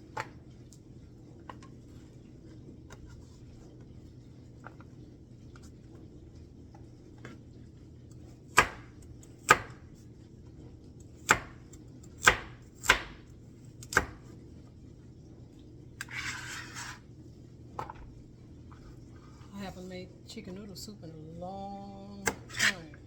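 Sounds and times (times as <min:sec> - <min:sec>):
knife chopping on cutting board: 0:08.5 - 0:09.8, 0:11.2 - 0:11.6, 0:12.2 - 0:13.2, 0:13.8 - 0:14.2, 0:22.3 - 0:22.8.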